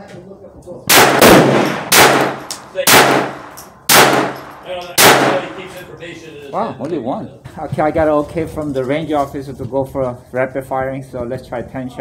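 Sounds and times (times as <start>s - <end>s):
pistol shots with echo: 0.9s - 5.7s.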